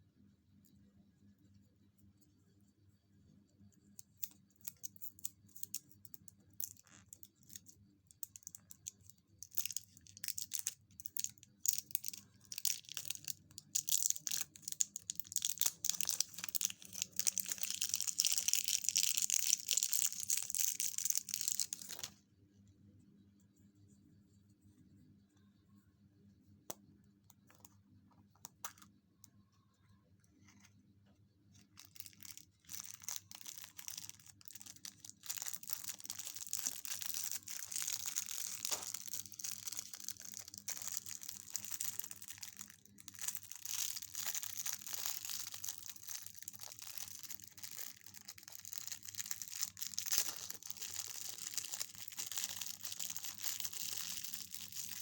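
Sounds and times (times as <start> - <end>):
wrapper crinkling and tearing: 8.3 - 22.1, 31.8 - 55.0.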